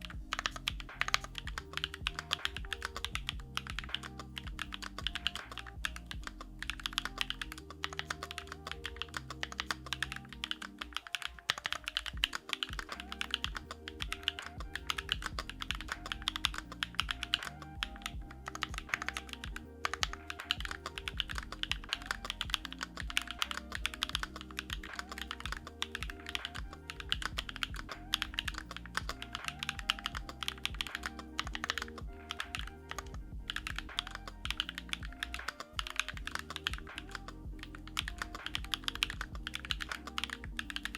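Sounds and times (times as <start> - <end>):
background music: 0.0 - 40.9
fast typing on mechanical keyboard: 0.0 - 40.9.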